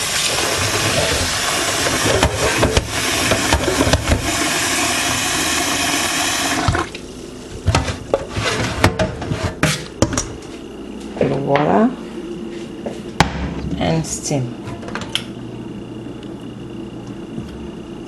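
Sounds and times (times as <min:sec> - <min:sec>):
tap running into pot: 0:00.7 - 0:04.5.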